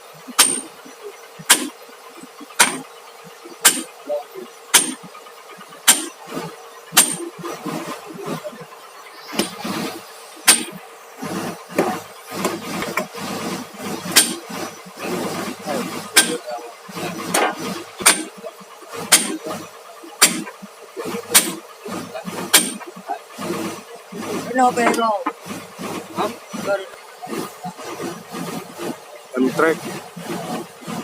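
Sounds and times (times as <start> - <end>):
steady hum: 0.0 - 31.0
hammer striking steel: 0.4 - 0.8, 1.4 - 1.8, 2.6 - 2.8, 3.6 - 4.0, 4.7 - 5.1, 5.8 - 6.2, 6.9 - 7.3, 10.4 - 10.8, 14.1 - 14.5, 16.2 - 16.5, 17.3 - 18.4, 19.0 - 19.5, 20.2 - 20.5, 21.3 - 21.6, 22.4 - 22.9
voices talking: 0.5 - 30.5.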